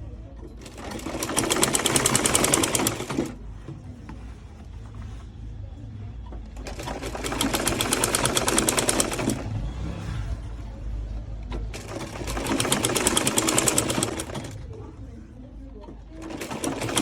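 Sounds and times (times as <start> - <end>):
sewing machine stitching: 0.6 - 3.4, 6.6 - 9.8, 11.5 - 14.7, 16.2 - 17.0.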